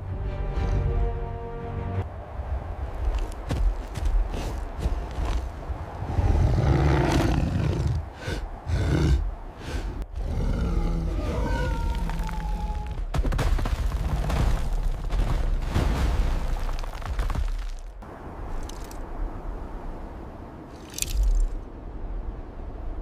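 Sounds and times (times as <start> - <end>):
creature-like roar: 6.1 - 13.0.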